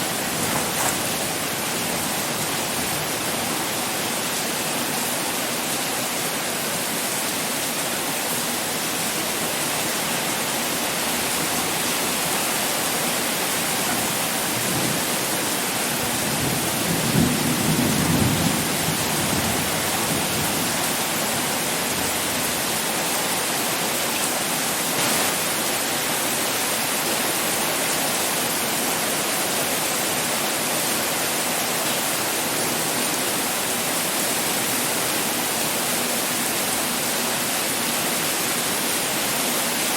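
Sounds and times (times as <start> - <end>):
heavy pouring rain: 0.0 - 39.9
low rumble of thunder: 16.3 - 20.5.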